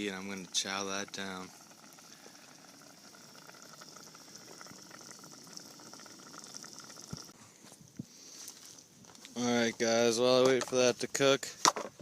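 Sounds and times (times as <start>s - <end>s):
stew bubbling and popping: 0.0s - 7.4s.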